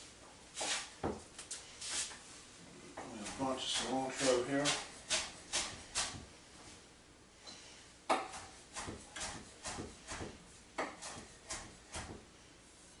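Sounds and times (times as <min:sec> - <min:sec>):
knife chopping on cutting board: 0:03.2 - 0:06.2, 0:08.1 - 0:12.2.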